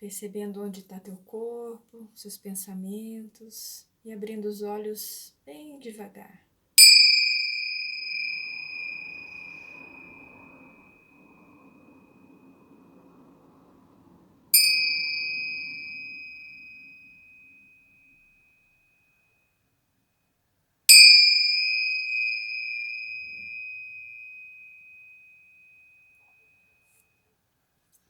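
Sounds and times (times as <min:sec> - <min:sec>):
crystal singing bowl ringing: 0:06.8 - 0:19.0, 0:20.9 - 0:26.9.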